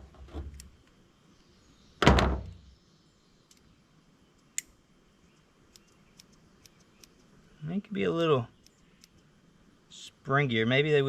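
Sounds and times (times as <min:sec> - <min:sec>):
loud metal thunk: 0:02.0 - 0:02.6.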